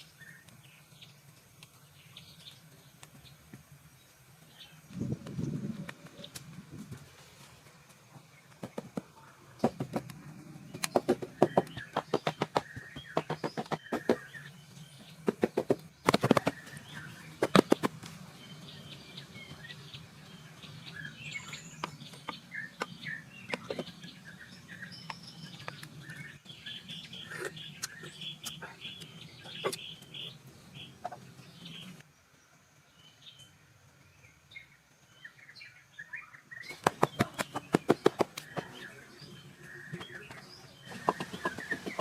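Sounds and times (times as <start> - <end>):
small birds chirping: 0.0 - 42.0
sharp knocks: 10.8 - 14.2.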